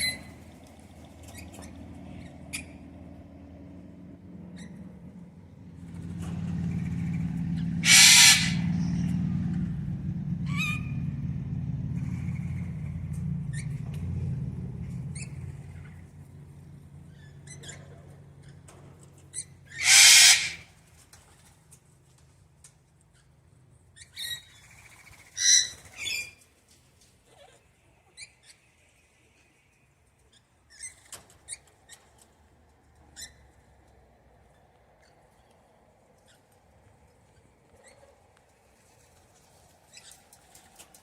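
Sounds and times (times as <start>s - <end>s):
parrot squawking: 7.8s - 9.0s, 19.7s - 20.6s.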